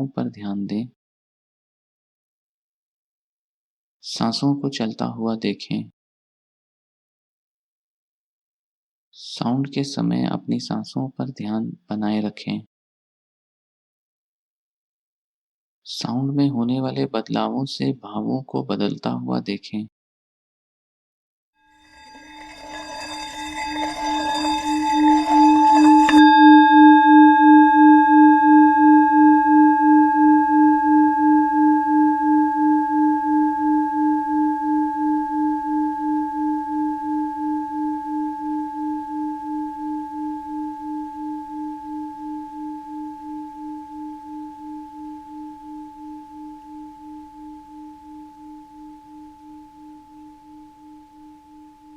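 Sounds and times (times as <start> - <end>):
singing bowl rubbed and ringing: 21.7 - 51.9.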